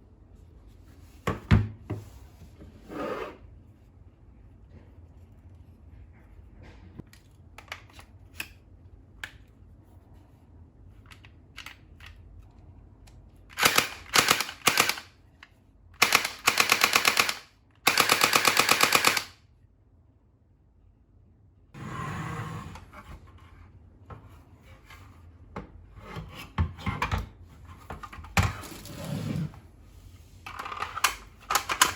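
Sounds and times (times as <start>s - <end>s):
toy blaster rapid fire: 13.6s - 15.1s, 16.0s - 19.4s.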